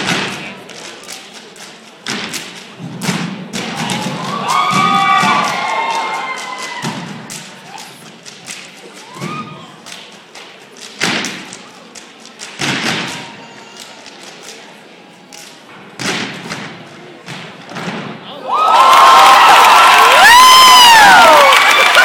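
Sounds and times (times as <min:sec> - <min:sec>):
people stomping and clapping: 0:00.0 - 0:11.6, 0:12.3 - 0:13.4, 0:16.0 - 0:22.0.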